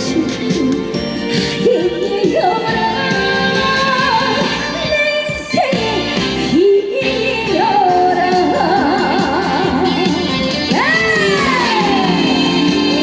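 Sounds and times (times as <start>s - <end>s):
woman singing with vibrato: 0.0s - 13.0s.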